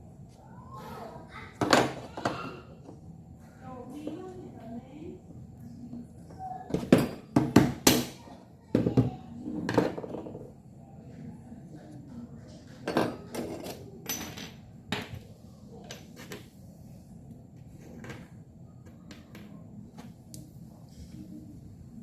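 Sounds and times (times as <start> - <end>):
low steady hum: 0.0 - 22.0
hard objects knocking and clinking: 12.8 - 15.2.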